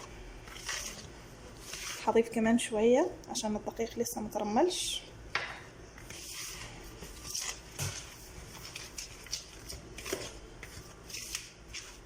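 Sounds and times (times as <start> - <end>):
hands rubbing in a bowl: 0.5 - 2.2.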